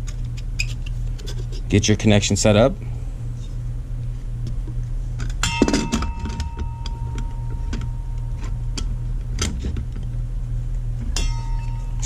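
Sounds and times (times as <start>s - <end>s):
copper pipe clinking with ringing: 5.2s - 9.7s, 11.1s - 12.0s.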